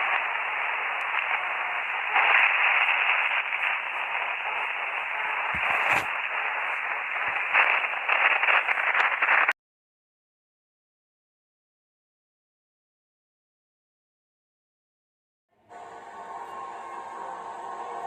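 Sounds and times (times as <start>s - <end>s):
radio static hiss and crackles: 0.0s - 9.6s, 15.7s - 18.0s.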